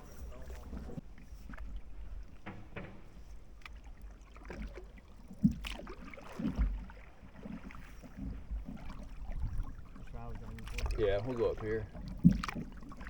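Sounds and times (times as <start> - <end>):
paddle strokes: 0.0 - 13.0
water sloshing: 0.0 - 13.0
dull thump: 2.4 - 3.3.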